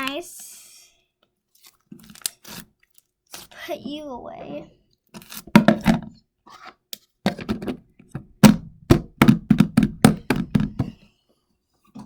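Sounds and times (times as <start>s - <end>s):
plastic container thuds and taps: 5.5s - 6.2s, 7.3s - 11.0s.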